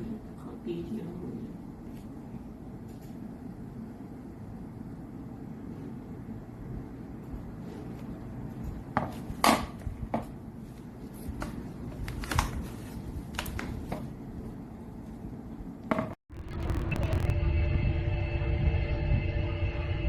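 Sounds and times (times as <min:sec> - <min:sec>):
steady low rumble: 0:15.3 - 0:20.0.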